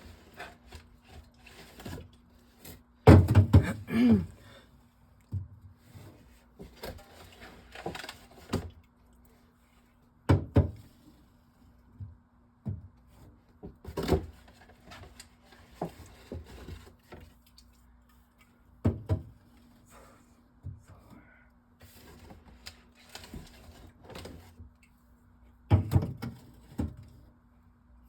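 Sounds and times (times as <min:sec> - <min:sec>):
soda cans knocking on shelves: 0:03.1 - 0:03.9, 0:10.3 - 0:10.8, 0:18.8 - 0:19.3, 0:25.7 - 0:26.4
faint steady hum: 0:17.0 - 0:25.7.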